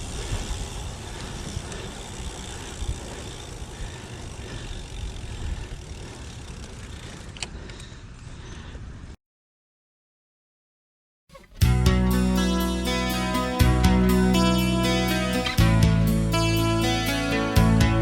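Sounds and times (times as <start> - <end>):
road and wind rumble: 0.0 - 9.2.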